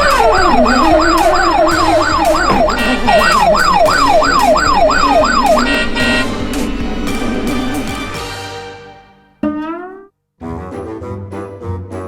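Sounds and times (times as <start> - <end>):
police siren yelping: 0.0 - 8.2.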